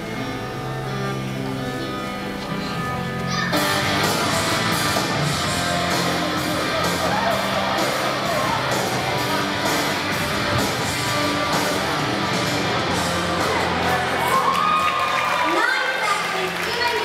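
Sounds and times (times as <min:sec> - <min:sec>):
strummed electric guitar: 0:00.0 - 0:14.4
rock music: 0:00.0 - 0:17.0
steady drum beat: 0:03.8 - 0:14.4.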